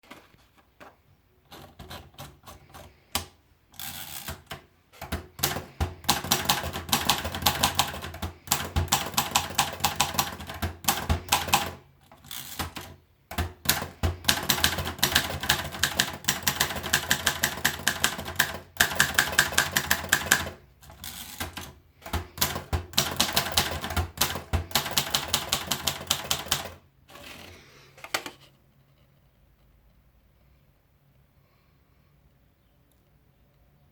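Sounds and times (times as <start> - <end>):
manual typewriter keystrokes: 1.5 - 26.8.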